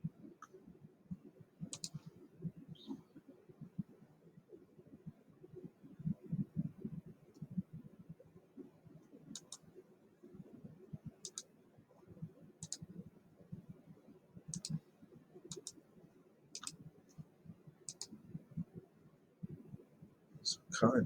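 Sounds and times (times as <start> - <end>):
computer mouse clicks: 1.7 - 2.1, 9.3 - 9.7, 11.2 - 11.5, 12.6 - 12.9, 14.5 - 14.8, 15.5 - 15.8, 16.6 - 16.8, 17.9 - 18.2.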